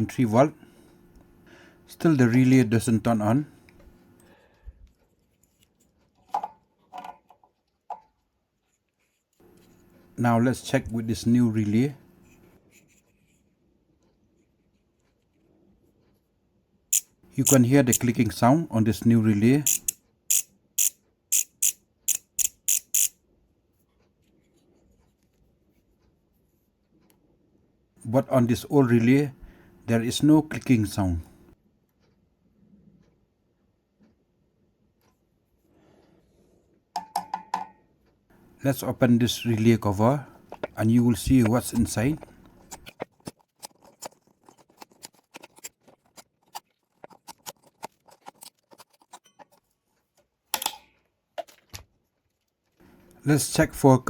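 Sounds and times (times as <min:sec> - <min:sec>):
small clicks and scratches: 0:04.8 - 0:07.8, 0:08.6 - 0:10.2, 0:12.1 - 0:16.3, 0:17.0 - 0:18.1, 0:19.6 - 0:23.1, 0:23.8 - 0:27.2, 0:40.4 - 0:50.4
relay clicking: 0:17.0 - 0:18.1, 0:19.6 - 0:23.1.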